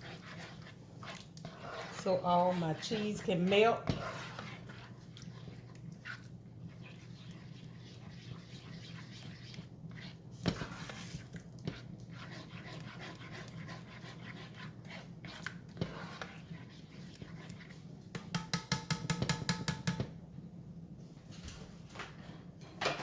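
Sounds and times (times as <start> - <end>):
spoon scraping metal saucepan: 0.0 - 17.8.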